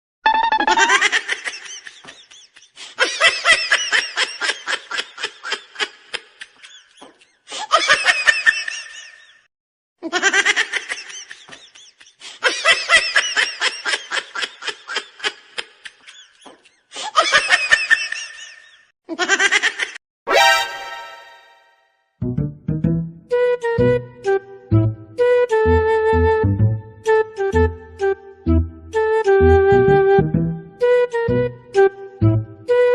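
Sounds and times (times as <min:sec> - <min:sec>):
high-pitched laughter: 0:00.3 - 0:09.4, 0:10.0 - 0:21.4
bright tonal sound: 0:20.3 - 0:21.8.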